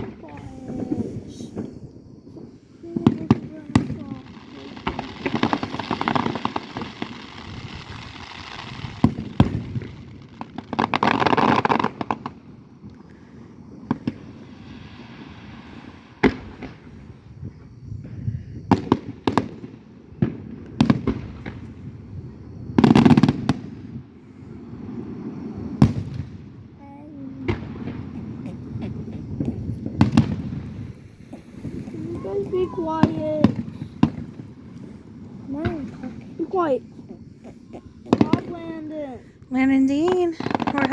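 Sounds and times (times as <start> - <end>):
firework shells bursting: 0.0 - 12.4, 27.2 - 40.9
crackling firework bursts: 0.0 - 40.9.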